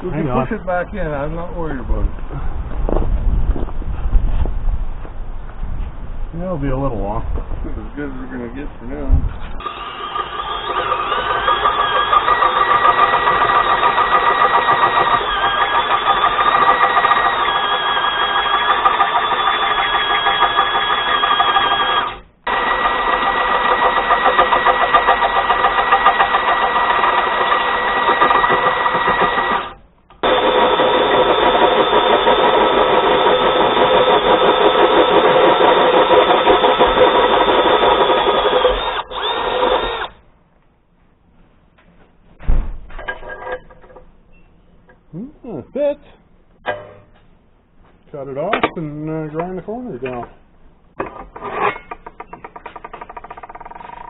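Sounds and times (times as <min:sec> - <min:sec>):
motor whine: 0:09.6 - 0:40.2
power cutting tool cutting steel: 0:09.6 - 0:40.2.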